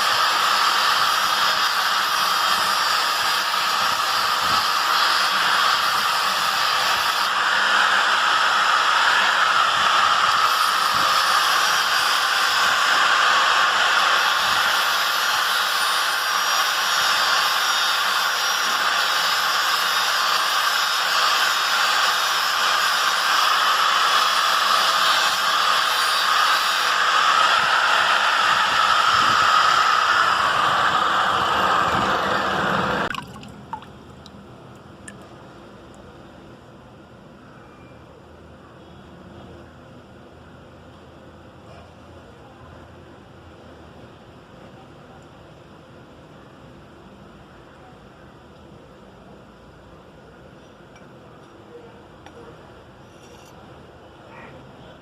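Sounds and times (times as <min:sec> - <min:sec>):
power grinder on steel blade: 0:00.0 - 0:33.1.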